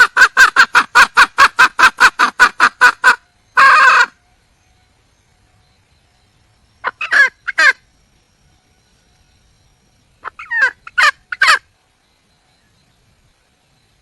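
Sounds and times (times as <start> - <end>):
hen calling: 0.0 - 4.2, 6.8 - 7.8, 10.2 - 11.7.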